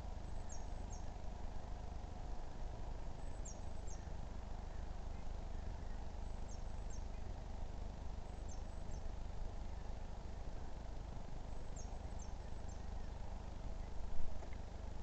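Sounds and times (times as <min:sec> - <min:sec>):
outdoor background hiss: 0:00.0 - 0:15.0
small bird chirping: 0:00.2 - 0:01.1, 0:03.2 - 0:07.4, 0:08.3 - 0:09.2, 0:11.5 - 0:13.1.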